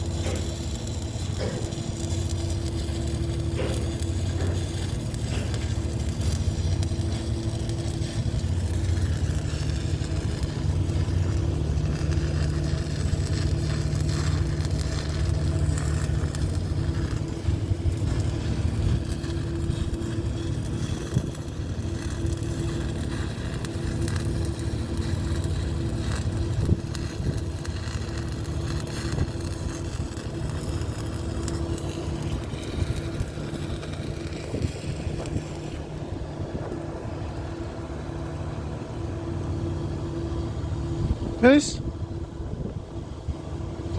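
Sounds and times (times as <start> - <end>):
arc welding crackle: 0.0 - 41.8
low machine hum: 0.0 - 43.9.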